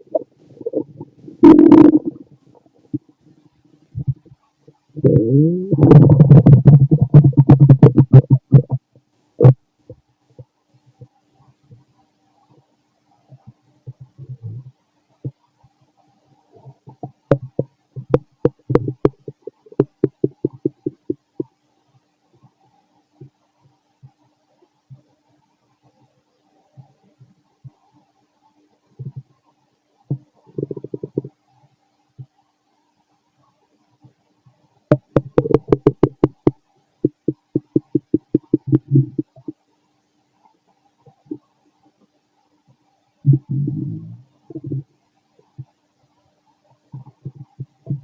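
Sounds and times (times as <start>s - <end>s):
stomach gurgling: 0.0s - 10.5s, 13.2s - 15.8s, 16.4s - 21.6s, 28.8s - 29.4s, 30.0s - 32.3s, 34.5s - 39.7s, 40.6s - 41.5s, 43.2s - 45.8s, 46.6s - 48.0s.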